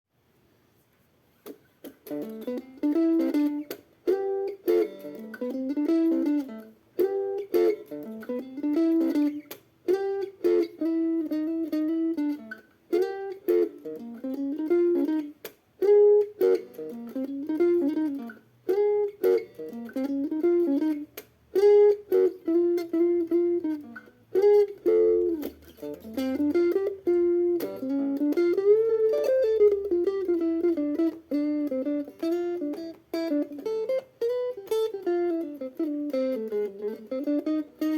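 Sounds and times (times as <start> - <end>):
plucked guitar melody: 1.4 - 37.9.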